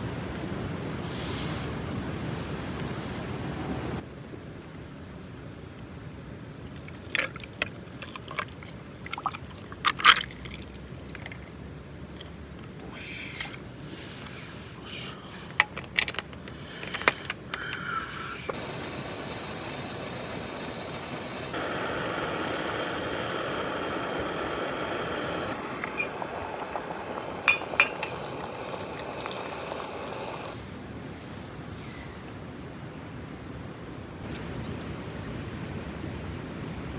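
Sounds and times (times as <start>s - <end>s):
steady liquid hiss: 12.0s - 32.1s.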